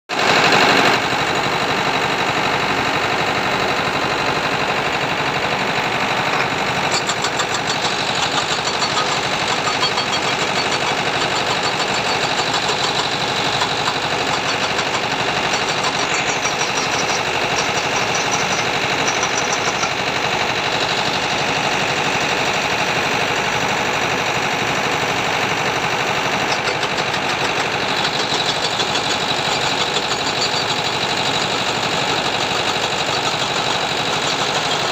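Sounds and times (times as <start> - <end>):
excavator diesel engine running: 0.1 - 34.9
rattle: 5.8 - 21.7, 26.0 - 34.9.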